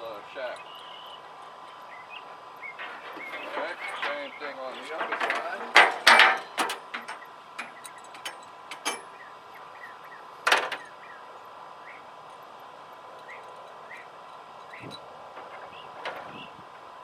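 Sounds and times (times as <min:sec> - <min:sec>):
light metal clinks: 0:00.1 - 0:16.5
metal clank: 0:02.6 - 0:09.3.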